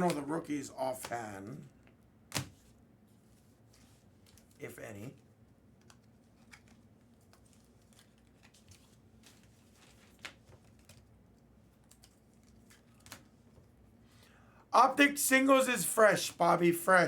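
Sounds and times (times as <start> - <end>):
trading cards clicking and rustling: 5.7 - 13.7.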